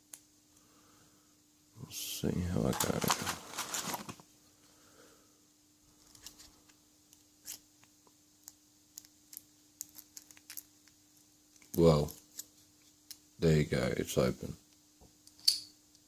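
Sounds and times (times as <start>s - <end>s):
handling noise: 2.5s - 4.3s.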